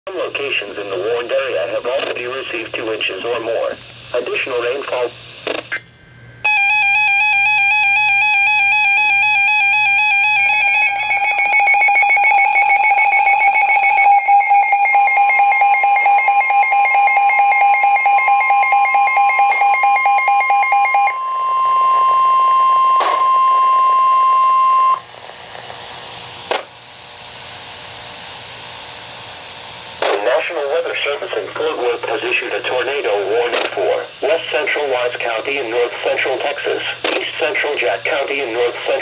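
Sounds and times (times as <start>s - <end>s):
pulsing buzzy alarm tone: 6.2s - 33.2s
steady high pure tone: 6.4s - 28.7s, 30.0s - 39.0s.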